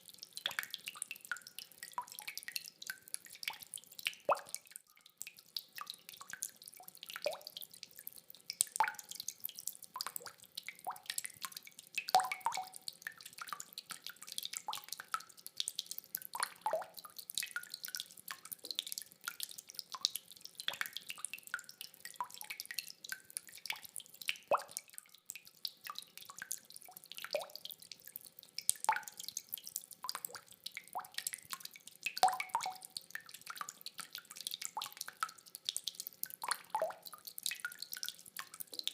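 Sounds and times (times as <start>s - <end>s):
water drops plipping: 0.3s - 7.8s, 8.5s - 27.9s, 28.6s - 38.9s.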